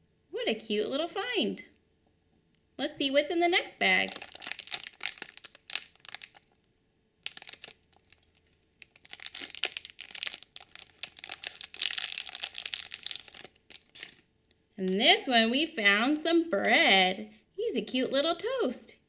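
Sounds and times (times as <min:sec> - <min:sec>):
plastic crinkling: 0:03.5 - 0:14.3
plastic bag tearing: 0:03.6 - 0:06.6, 0:07.2 - 0:14.2.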